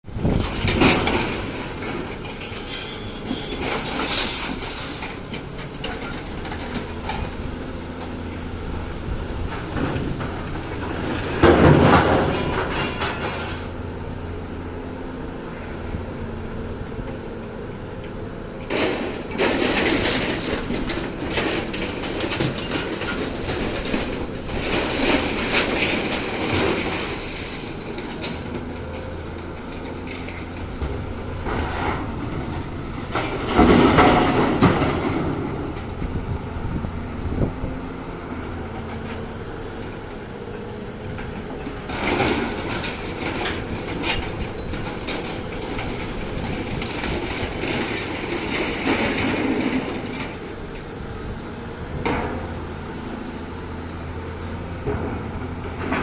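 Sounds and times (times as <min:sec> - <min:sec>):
excavator engine running: 0:00.1 - 0:56.0
scrap metal clanking and scraping: 0:00.2 - 0:07.5, 0:09.4 - 0:13.8, 0:18.7 - 0:36.1, 0:38.4 - 0:50.6, 0:54.5 - 0:56.0.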